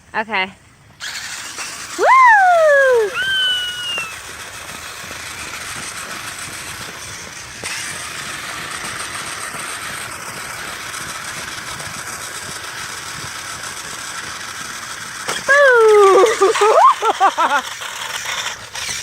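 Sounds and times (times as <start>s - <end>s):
toy car motor whirring: 1.0s - 19.0s.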